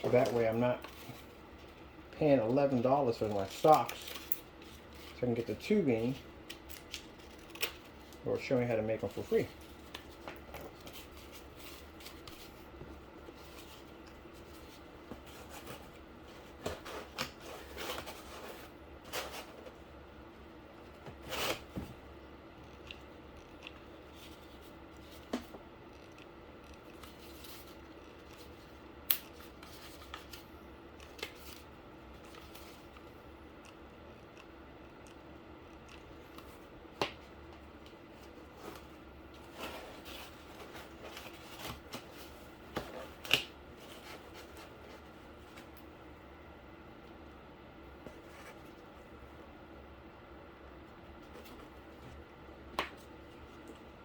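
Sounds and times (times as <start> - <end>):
cardboard and tubing rustling: 0.0 - 1.8, 2.4 - 19.8, 37.8 - 45.8
faint steady hum: 0.0 - 54.0.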